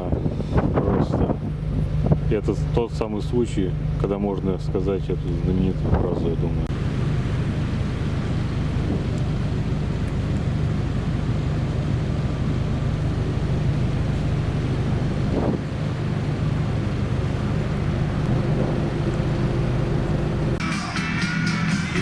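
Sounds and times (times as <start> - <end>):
wind buffeting microphone: 0.0 - 2.8, 5.4 - 20.6
ship engines droning: 0.0 - 22.0
music: 20.6 - 22.0.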